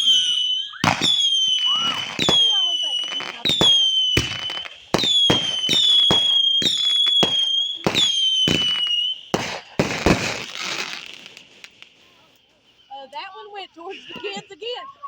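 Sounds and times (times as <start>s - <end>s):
shrill firework whistle: 0.0s - 12.2s
firework crackling: 0.0s - 13.0s
firework pops: 0.8s - 12.2s.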